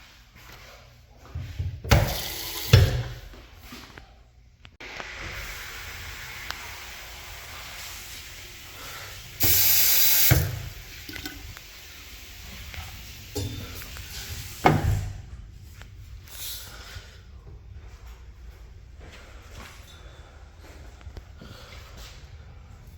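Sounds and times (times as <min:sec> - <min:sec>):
water running through plumbing: 0:00.4 - 0:04.0, 0:04.8 - 0:18.0
loud hiss: 0:04.8 - 0:10.8.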